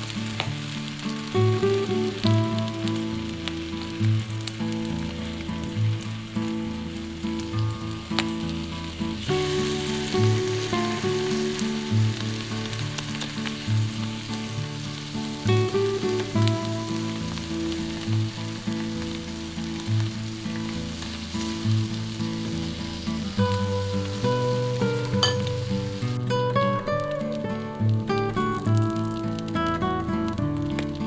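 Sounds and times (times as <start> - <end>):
food sizzling in a pan: 0.0 - 31.0
light background music: 8.1 - 19.5.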